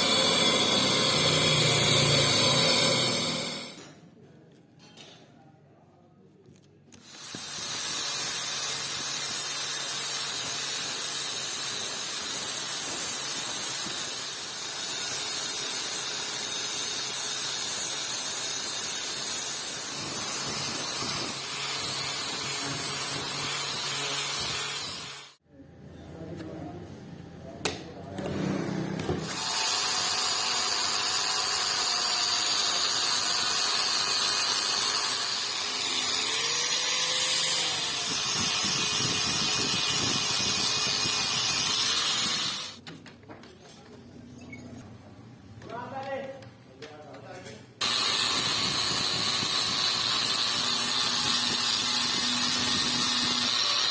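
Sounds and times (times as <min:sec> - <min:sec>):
electric grinder on steel blade: 0:00.0 - 0:03.9, 0:07.0 - 0:25.4, 0:29.1 - 0:42.8, 0:47.8 - 0:53.9.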